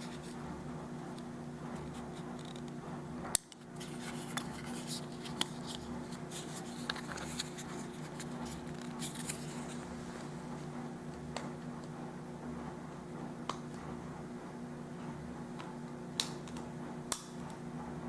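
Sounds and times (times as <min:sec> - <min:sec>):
steady low hum: 0:00.0 - 0:18.0
packaging rustling: 0:03.8 - 0:09.8.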